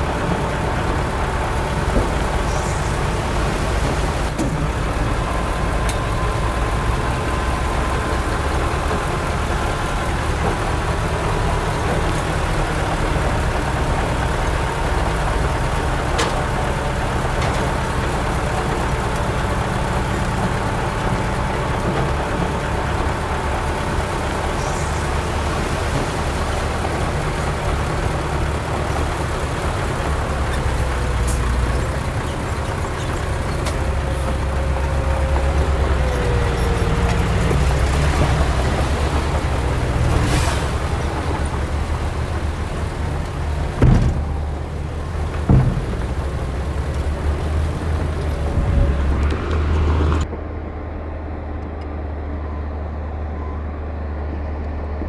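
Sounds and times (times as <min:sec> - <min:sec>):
diesel machinery engine rumble: 0:00.0 - 0:55.0
loud knocks: 0:43.7 - 0:44.6, 0:45.3 - 0:46.6.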